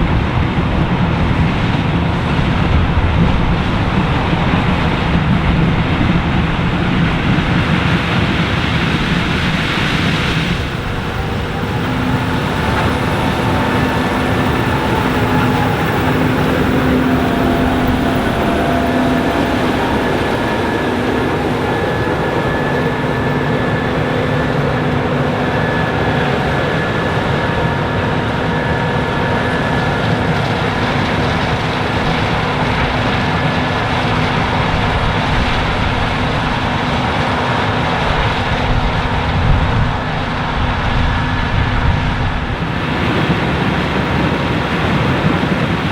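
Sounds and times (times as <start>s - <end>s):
high whine: 0.0s - 37.0s
combine harvester droning: 0.0s - 45.9s.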